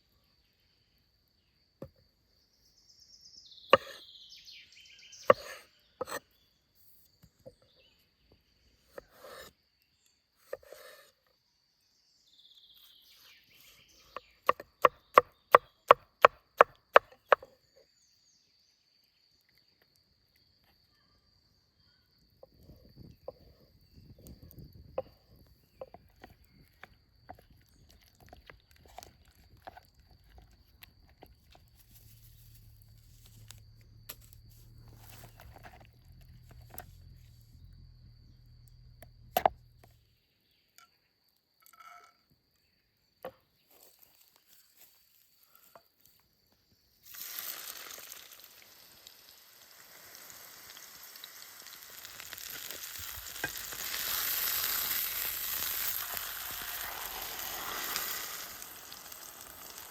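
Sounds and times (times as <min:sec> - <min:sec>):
burger sizzling in a pan: 0:47.1 - 0:59.9.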